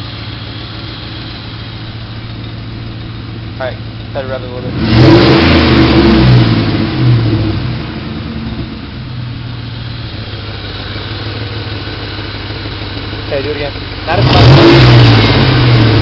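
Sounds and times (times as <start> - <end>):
car engine revving and idling: 0.0 - 16.0.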